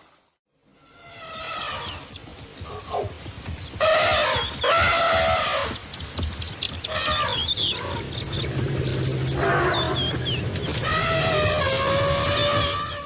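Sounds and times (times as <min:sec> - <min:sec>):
birds chirping: 0:00.8 - 0:13.0
elephant trumpeting: 0:03.8 - 0:05.8, 0:06.9 - 0:08.0, 0:10.8 - 0:13.0.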